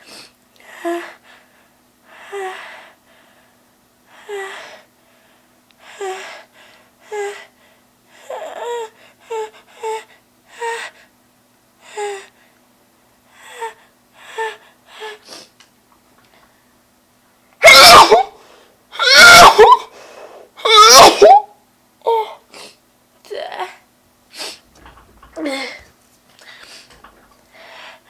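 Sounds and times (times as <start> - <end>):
woman gasping inhalations: 24.4 - 28.0.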